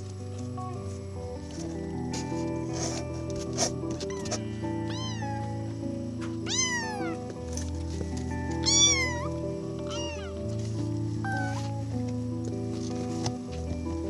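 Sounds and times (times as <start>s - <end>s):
background music: 0.0s - 14.0s
kitten meowing: 4.1s - 5.5s, 6.4s - 7.3s, 8.6s - 10.4s, 11.2s - 11.8s.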